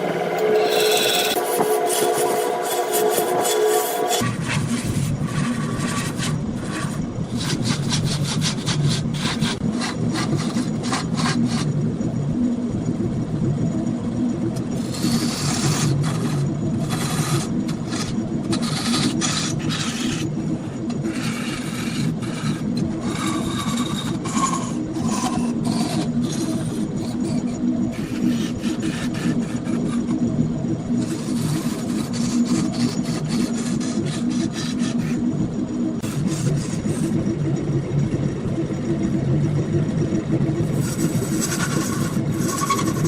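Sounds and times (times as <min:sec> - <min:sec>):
wood lathe humming: 0:00.0 - 0:06.8, 0:14.8 - 0:30.2, 0:31.0 - 0:35.2, 0:40.6 - 0:43.0
tool cutting spinning wood: 0:00.0 - 0:11.7, 0:14.8 - 0:30.2, 0:31.0 - 0:37.2, 0:40.6 - 0:43.0.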